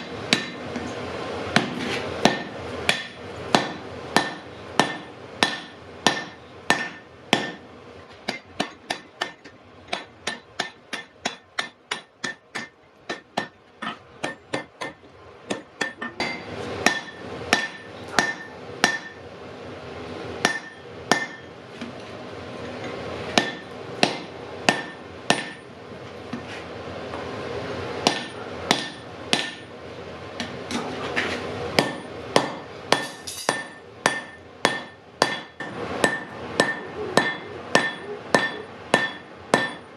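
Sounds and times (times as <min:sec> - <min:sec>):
hammer striking iron on anvil: 0:00.0 - 0:00.9, 0:01.5 - 0:19.2, 0:20.4 - 0:21.5, 0:22.7 - 0:25.7, 0:28.0 - 0:29.8, 0:31.8 - 0:39.9.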